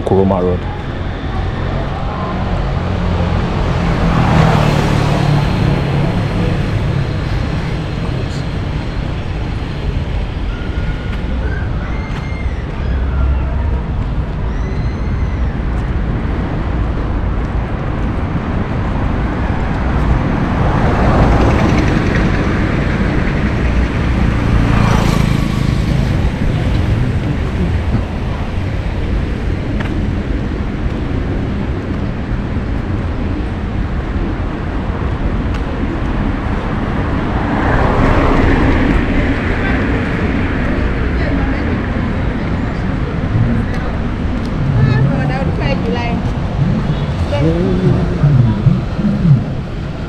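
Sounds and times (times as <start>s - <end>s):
rumble of road traffic: 0.0s - 50.0s
vehicle passing close: 0.8s - 10.8s, 18.1s - 29.6s, 35.9s - 50.0s.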